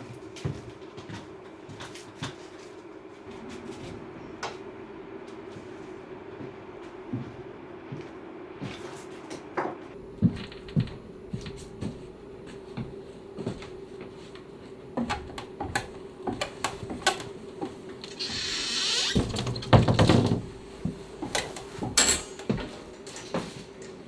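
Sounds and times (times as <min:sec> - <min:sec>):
steady low hum: 0:09.9 - 0:24.0
hand tool clicks and knocks: 0:19.8 - 0:23.2.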